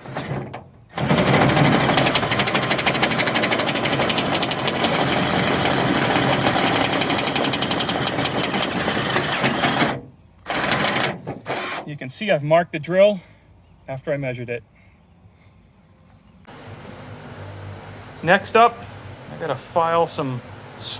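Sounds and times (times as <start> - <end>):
power drill cutting through steel: 0.0 - 9.9.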